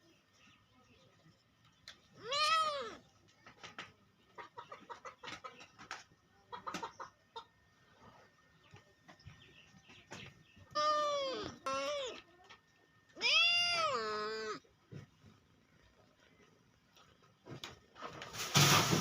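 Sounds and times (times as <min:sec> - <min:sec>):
cat meowing: 0:02.2 - 0:03.0, 0:10.7 - 0:12.3, 0:13.2 - 0:14.6.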